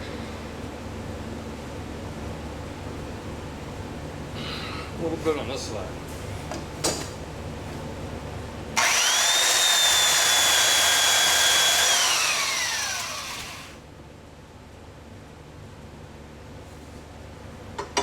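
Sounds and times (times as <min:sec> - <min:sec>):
power sander whining: 0:08.8 - 0:13.8.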